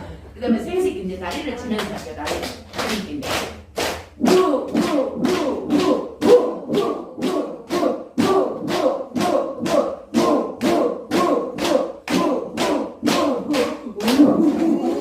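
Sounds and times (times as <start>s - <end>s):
group shouting laughing syllables: 12.2s - 15.0s.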